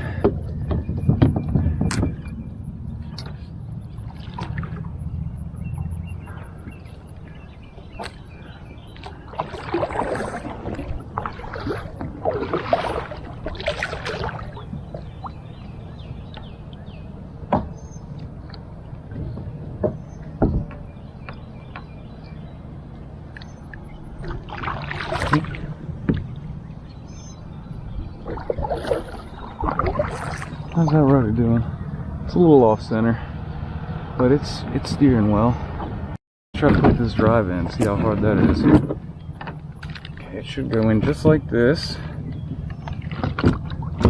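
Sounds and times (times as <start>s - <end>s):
water splashing around kayak: 0.0s - 44.0s
paddle knocking hull: 9.0s - 15.2s, 36.6s - 44.0s.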